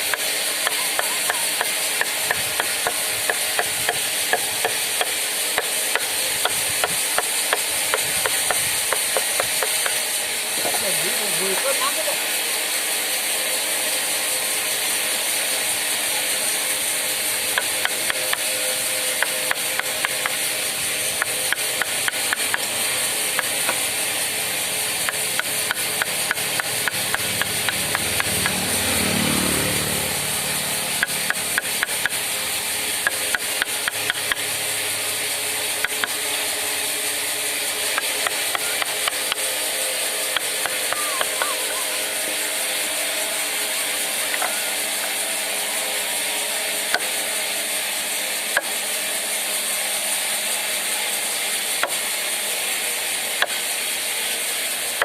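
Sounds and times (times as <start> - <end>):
steady hiss: 0.0 - 29.1, 29.9 - 55.0
carving tools clicking on wood: 0.1 - 10.0, 17.5 - 18.5, 19.2 - 20.4, 21.2 - 22.7, 23.4 - 23.8, 25.0 - 28.6, 31.0 - 32.2, 33.0 - 34.5, 35.8 - 36.2, 37.9 - 39.4, 40.3 - 40.9, 48.5 - 48.8, 51.8 - 52.0, 53.4 - 53.6.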